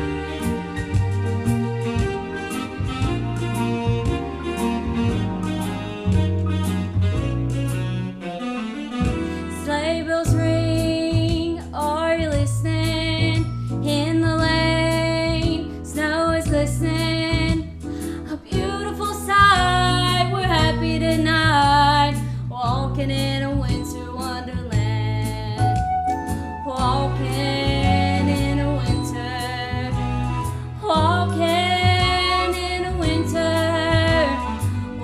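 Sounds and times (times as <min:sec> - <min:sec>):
repeating bass line: 0:00.0 - 0:08.2
band playing: 0:00.0 - 0:09.7
melody with vibrato: 0:00.0 - 0:09.8.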